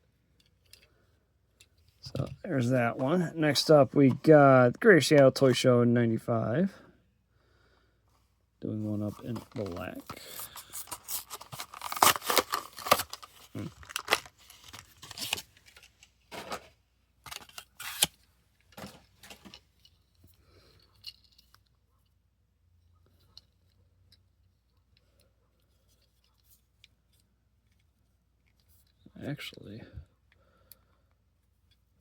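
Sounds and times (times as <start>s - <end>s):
packaging clicks and crinkles: 9.2s - 18.2s
packaging being torn open: 10.3s - 15.5s, 17.3s - 18.2s.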